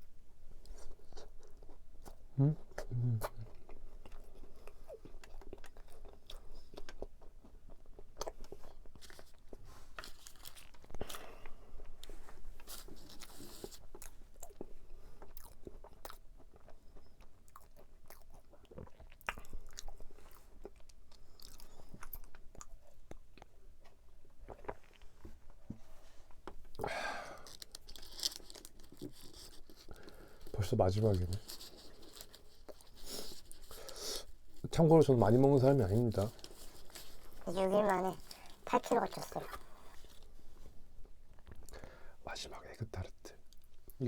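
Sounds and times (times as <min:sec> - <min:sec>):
pastry crunching while chewing: 0:00.6 - 0:25.1, 0:26.6 - 0:34.6.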